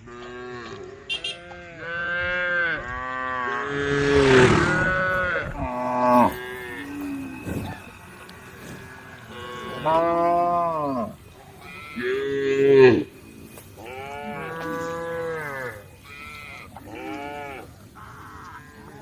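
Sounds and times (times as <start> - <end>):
cows mooing: 0.0 - 19.0.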